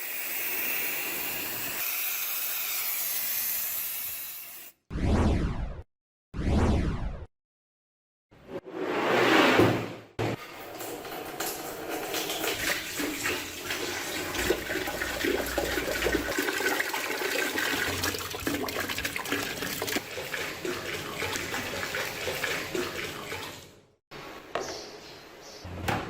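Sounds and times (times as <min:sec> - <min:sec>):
water running and splashing: 0:10.4 - 0:23.8.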